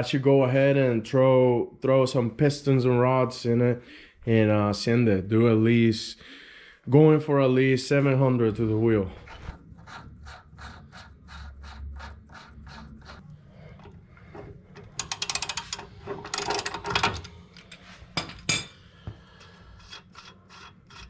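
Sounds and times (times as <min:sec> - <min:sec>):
socket ratchet clicking: 0:14.8 - 0:16.8.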